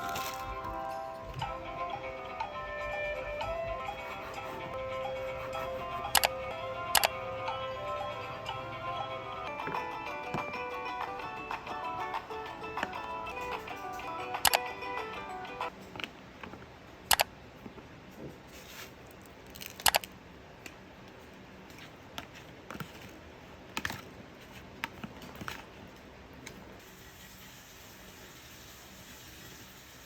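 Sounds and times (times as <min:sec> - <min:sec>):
small objects clicking and knocking: 0:19.4 - 0:20.1.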